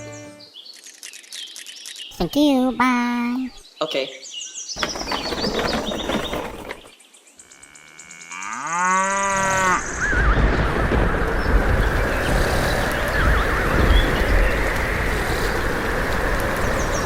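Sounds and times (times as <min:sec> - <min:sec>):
rushing noise with low rumble: 0:10.0 - 0:17.0.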